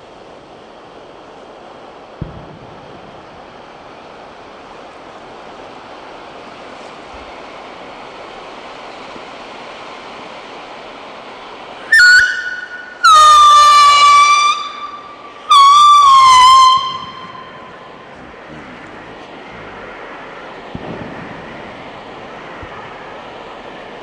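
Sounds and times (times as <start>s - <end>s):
firework fountain hissing: 0.0s - 24.0s
firework whistle: 11.8s - 18.0s.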